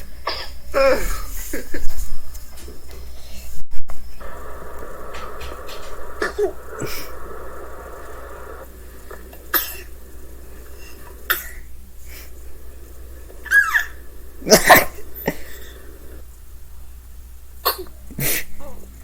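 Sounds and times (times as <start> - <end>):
baby sneezing: 17.6 - 18.5.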